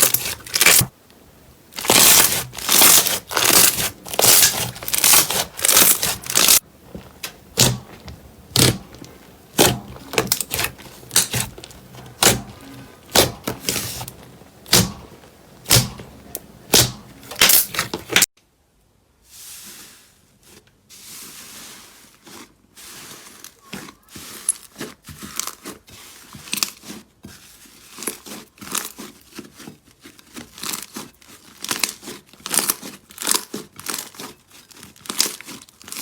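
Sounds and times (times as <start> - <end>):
soft squishing rustle: 0.0 - 18.3, 19.2 - 36.0.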